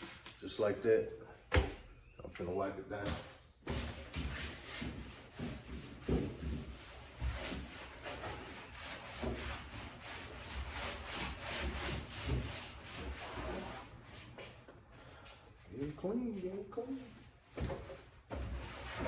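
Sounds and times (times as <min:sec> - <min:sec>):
paper towel scrubbing metal: 0:03.7 - 0:14.2.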